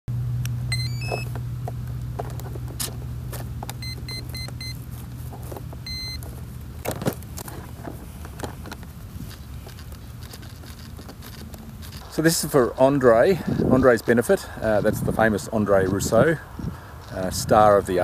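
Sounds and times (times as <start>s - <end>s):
low steady hum: 0.1s - 17.1s
electronic beeps: 0.7s - 1.3s, 3.8s - 4.8s, 5.8s - 6.2s.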